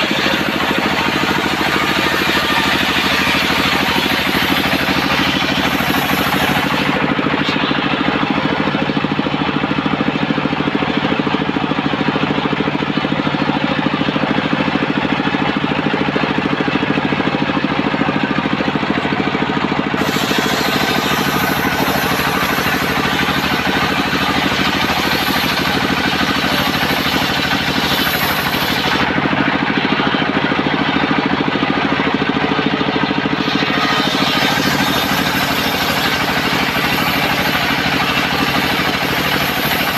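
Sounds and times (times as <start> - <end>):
circular saw engine running: 0.0 - 39.9.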